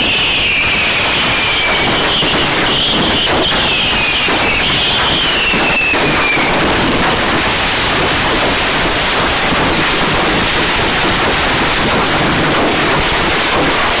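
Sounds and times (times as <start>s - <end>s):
faint falling whistle: 0.0s - 7.7s, 9.1s - 10.0s
fireworks crackling and hissing: 0.0s - 14.0s.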